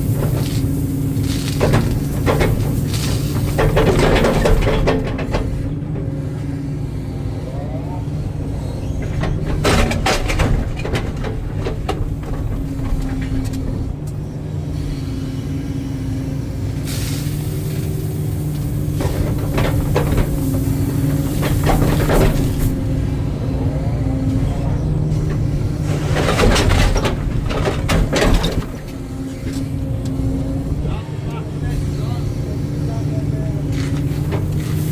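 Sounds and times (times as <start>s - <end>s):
excavator diesel engine running: 0.0s - 34.9s
rattling and knocking: 1.6s - 6.2s, 9.0s - 14.0s, 24.6s - 29.7s.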